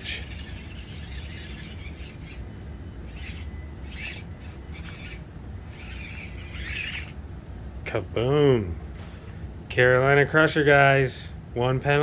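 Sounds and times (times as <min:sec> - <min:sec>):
rc car tyres scraping: 0:00.0 - 0:07.2.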